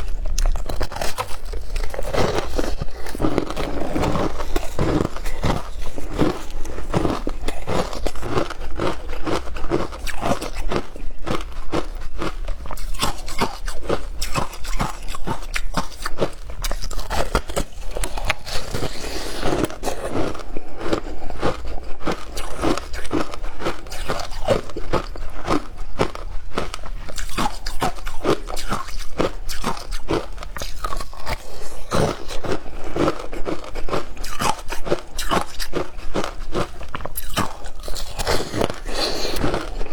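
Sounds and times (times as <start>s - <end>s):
person chewing crunchy ice: 0.0s - 39.9s.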